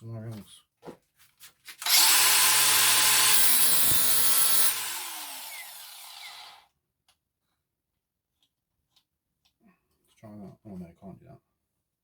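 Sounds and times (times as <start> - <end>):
angle grinder grinding steel: 1.8 - 6.6.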